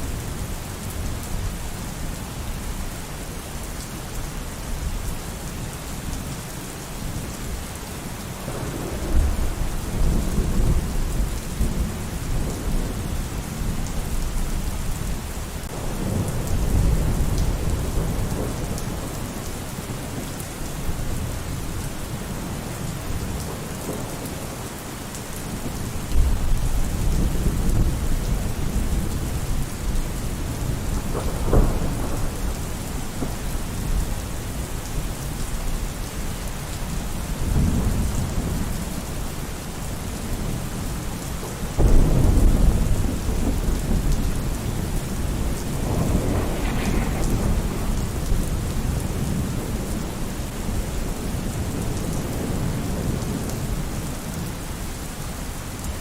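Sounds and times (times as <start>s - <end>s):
heavy rain: 0.0s - 56.0s
thunder rumbling: 8.4s - 14.7s, 25.4s - 35.8s, 41.7s - 54.5s.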